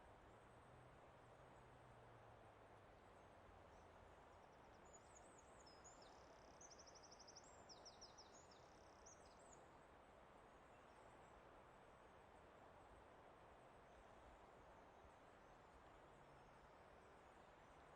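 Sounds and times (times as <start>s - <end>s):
soft outdoor hiss: 0.0s - 17.9s
songbird chirps and trills: 3.7s - 9.7s.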